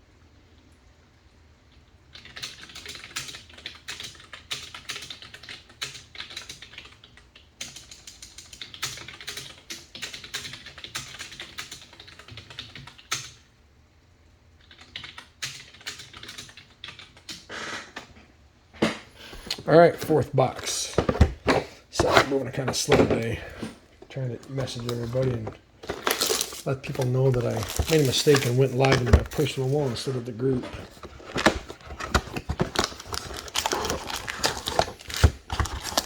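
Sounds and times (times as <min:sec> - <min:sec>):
fast typing on a keyboard: 0:02.1 - 0:13.4, 0:14.6 - 0:17.5.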